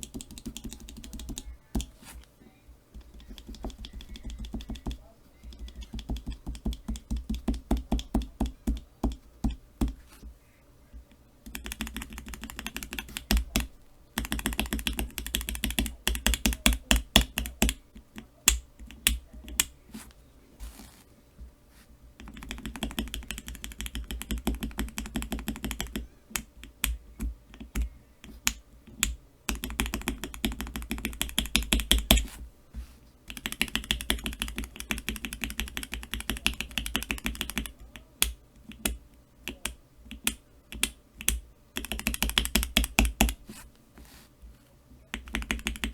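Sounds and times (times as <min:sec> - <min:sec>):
keyboard switches clacking: 0:02.9 - 0:10.0, 0:11.4 - 0:19.8, 0:33.3 - 0:43.4.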